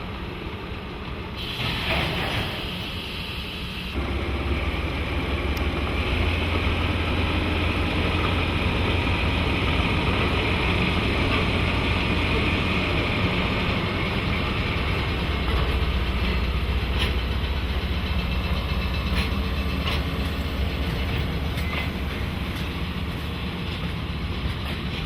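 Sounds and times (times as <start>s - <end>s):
diesel locomotive engine drone: 0.0s - 25.0s
wheels clicking over rail joints: 13.7s - 25.0s.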